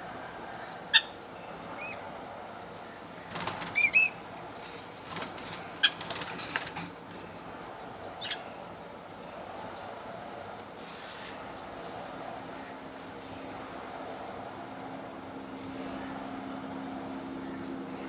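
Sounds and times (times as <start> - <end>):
bird wings flapping: 3.3 - 4.1, 5.0 - 7.3.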